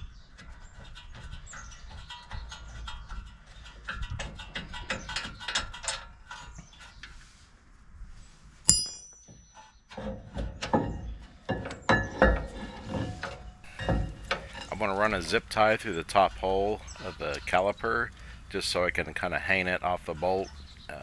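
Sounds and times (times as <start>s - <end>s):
sharp ringing metallic ping: 8.7s - 9.3s
metal tools clicking and knocking: 13.7s - 18.6s
heavy metal knocks: 13.7s - 19.3s.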